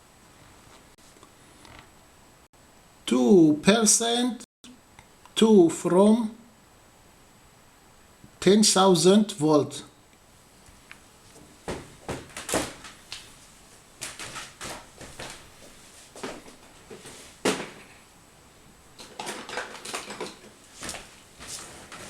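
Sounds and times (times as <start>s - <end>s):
small hard objects clicking and knocking: 19.0s - 20.6s.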